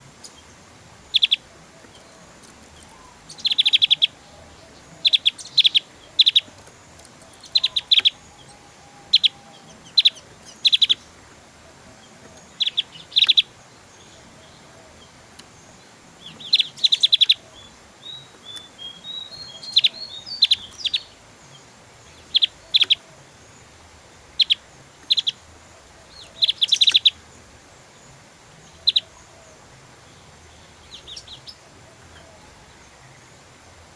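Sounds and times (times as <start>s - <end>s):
bird singing rapid high notes: 1.1s - 2.1s, 2.8s - 11.2s, 16.3s - 17.4s.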